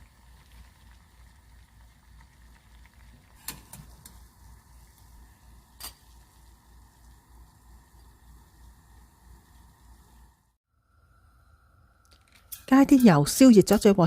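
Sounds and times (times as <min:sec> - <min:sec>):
low hum: 0:06.5 - 0:13.4
kitchen utensils clicking: 0:12.4 - 0:14.0.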